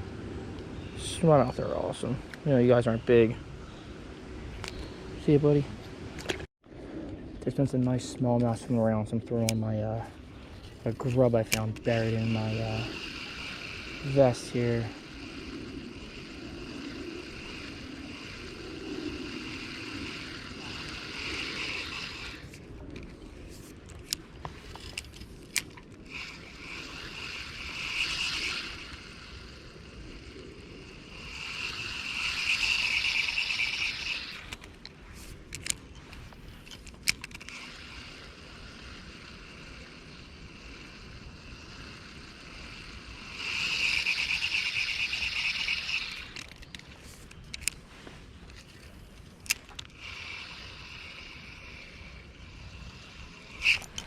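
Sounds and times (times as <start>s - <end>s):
fishing reel cranking: 10.6s - 47.8s, 48.6s - 54.0s
creek water running: 10.8s - 22.5s
sharp clicks: 53.4s - 54.0s.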